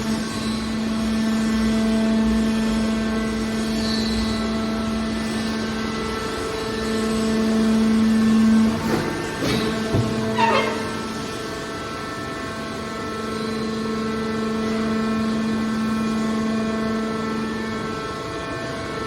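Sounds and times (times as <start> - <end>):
engine and hydraulic unit humming: 7.4 - 12.0
knocks: 8.7 - 11.2.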